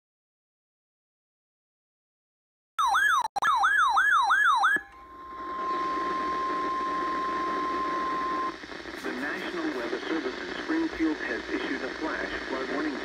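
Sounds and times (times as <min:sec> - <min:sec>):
electronic warbling alarm: 0:02.8 - 0:08.6
radio hiss: 0:05.1 - 0:13.0.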